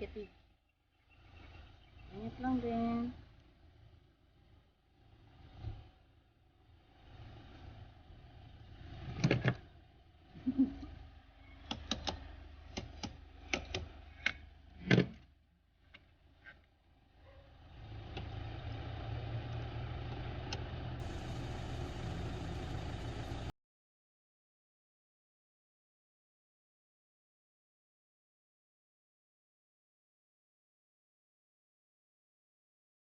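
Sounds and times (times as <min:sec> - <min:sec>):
car engine starting and idling: 0:17.5 - 0:23.5.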